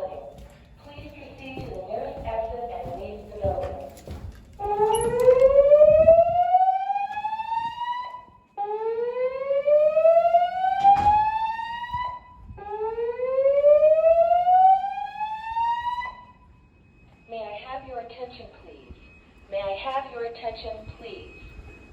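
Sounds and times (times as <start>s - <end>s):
fire alarm whoop tone: 4.6s - 21.9s.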